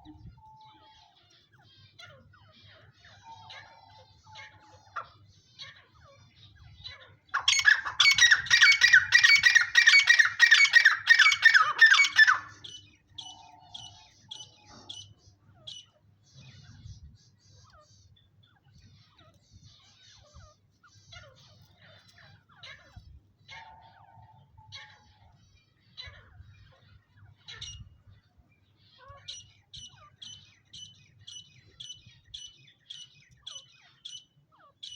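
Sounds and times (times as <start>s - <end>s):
faint bird chirps and squeaks: 0.0s - 34.9s
francolin harsh repeated calls: 7.4s - 12.7s.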